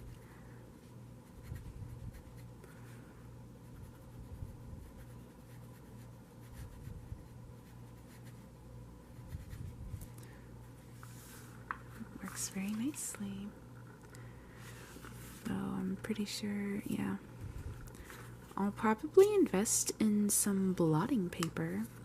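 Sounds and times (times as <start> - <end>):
fountain pen scratching on paper: 1.2 - 2.5, 3.6 - 9.8.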